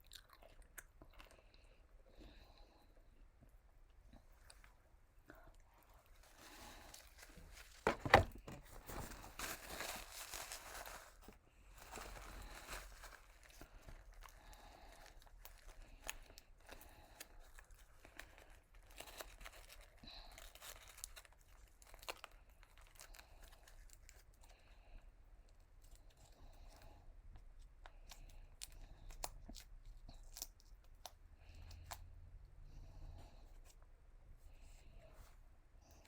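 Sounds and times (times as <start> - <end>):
chewing food: 0.0 - 6.8, 27.5 - 32.2
paper tearing and crinkling: 6.5 - 11.3.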